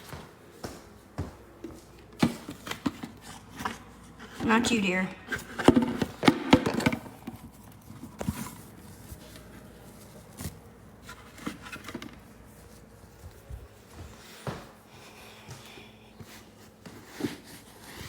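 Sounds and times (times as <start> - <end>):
household items clattering: 2.2 - 8.7.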